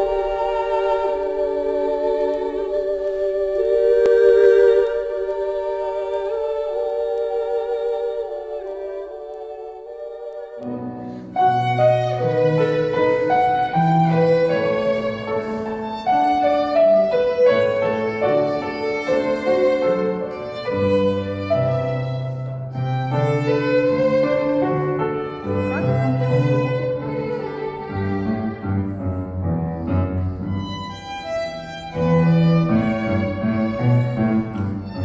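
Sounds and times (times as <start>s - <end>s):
bowed string melody: 0.0s - 35.0s
piano and bass accompaniment: 10.6s - 35.0s.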